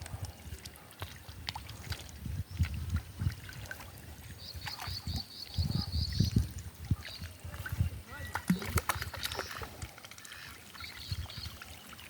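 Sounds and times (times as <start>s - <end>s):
pond water trickling and sloshing: 0.0s - 12.0s.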